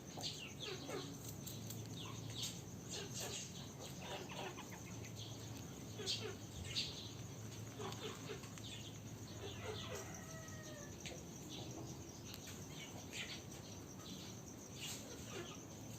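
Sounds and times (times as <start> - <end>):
chickens clucking: 2.0 - 6.9.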